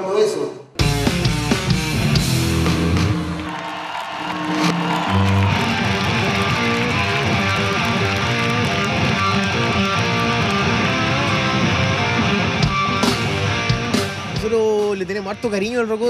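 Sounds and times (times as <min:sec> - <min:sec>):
bass line: 0:00.8 - 0:03.5, 0:04.4 - 0:15.6
rock music: 0:00.8 - 0:16.0
strummed guitar: 0:04.6 - 0:14.9.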